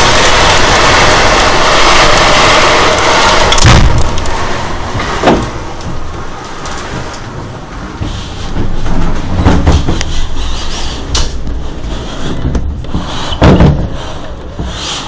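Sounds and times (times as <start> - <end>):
rain: 0.0 - 13.3
storm wind roaring: 0.0 - 14.8
sudden knocks: 3.6 - 10.0, 12.4 - 14.0.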